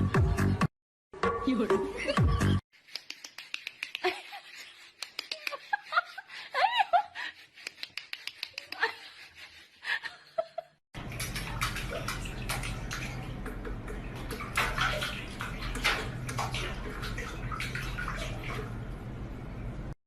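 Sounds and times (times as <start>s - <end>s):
water running and splashing: 11.0s - 19.0s.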